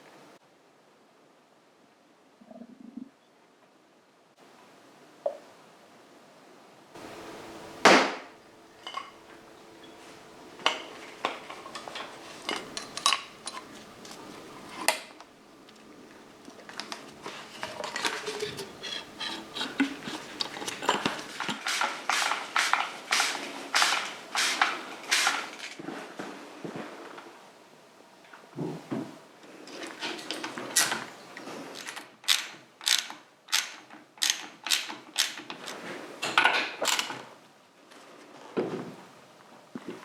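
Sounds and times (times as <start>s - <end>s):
metal tools clinking on workbench: 8.7s - 15.2s, 16.4s - 25.8s.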